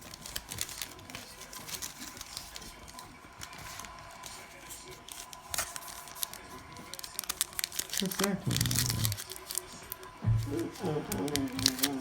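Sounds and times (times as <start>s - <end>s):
trading cards clicking and rustling: 0.0s - 12.0s.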